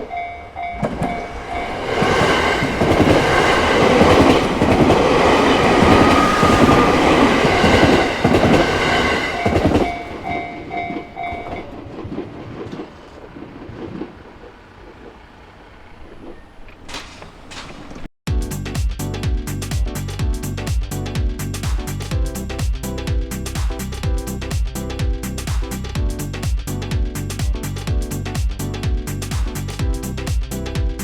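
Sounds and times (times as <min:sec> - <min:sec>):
level crossing warning bell: 0:00.0 - 0:04.6, 0:05.6 - 0:11.8
train clattering past: 0:00.0 - 0:18.1.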